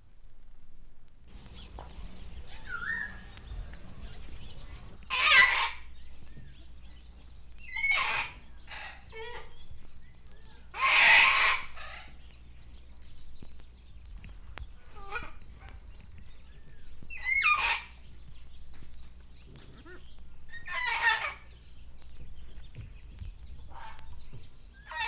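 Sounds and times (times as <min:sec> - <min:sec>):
faint short calls and chirps: 0:01.3 - 0:25.0
loud harsh animal calls: 0:05.0 - 0:06.0, 0:07.7 - 0:09.6, 0:10.7 - 0:12.3, 0:17.1 - 0:18.0, 0:19.6 - 0:21.5, 0:24.8 - 0:25.0.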